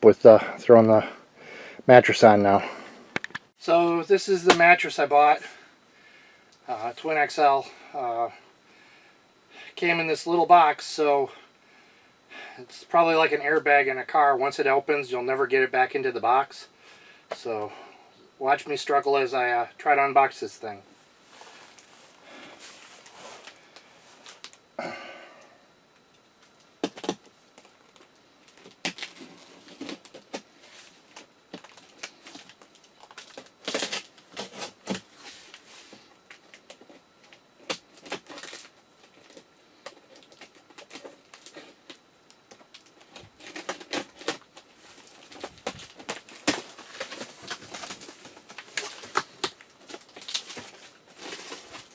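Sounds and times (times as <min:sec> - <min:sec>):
packaging rustling and tearing: 0:26.8 - 0:51.9.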